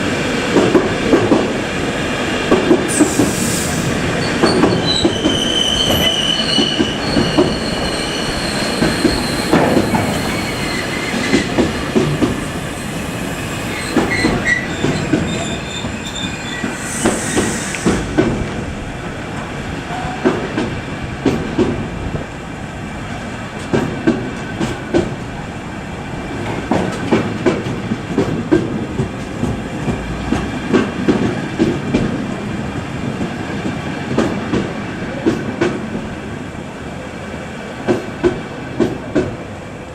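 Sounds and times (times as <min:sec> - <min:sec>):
train wheels squealing: 0:02.9 - 0:18.1
wheels clacking over rail joints: 0:13.4 - 0:16.8.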